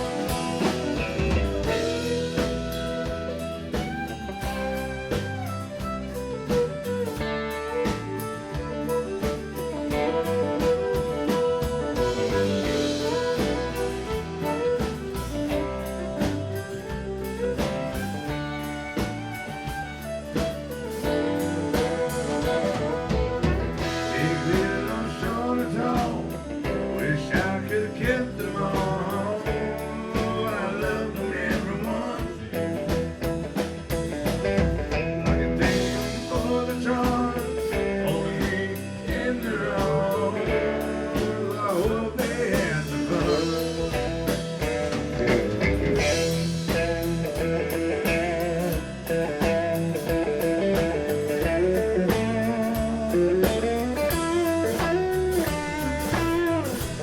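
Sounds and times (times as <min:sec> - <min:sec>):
lead guitar bending notes: 0:00.0 - 0:28.8, 0:42.1 - 0:57.0
live band playing: 0:00.0 - 0:57.0.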